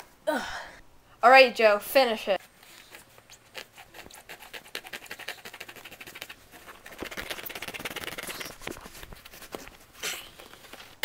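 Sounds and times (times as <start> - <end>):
knife sawing through rubber: 3.0 - 8.3.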